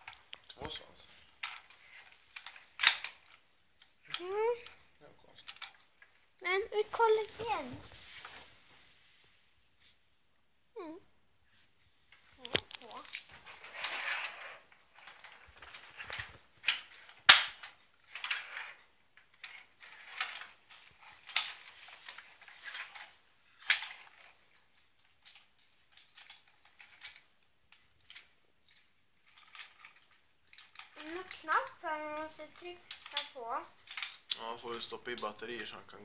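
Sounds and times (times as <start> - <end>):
plastic toy parts clicking and rattling: 0.0 - 6.2, 12.1 - 35.7
plastic parts snapping together: 12.4 - 13.4.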